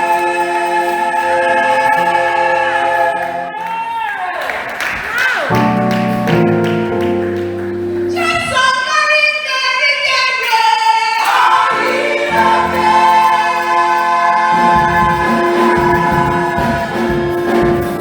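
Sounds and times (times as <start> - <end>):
choir singing held chords: 0.0 - 4.3, 10.6 - 18.0.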